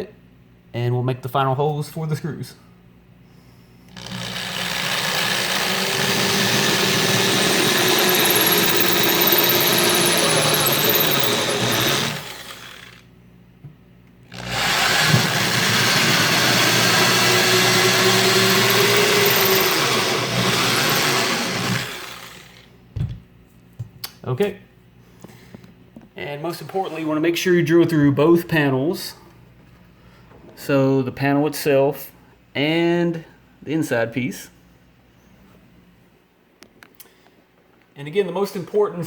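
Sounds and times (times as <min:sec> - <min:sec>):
power drill boring wood: 0:03.9 - 0:13.0, 0:14.3 - 0:22.7.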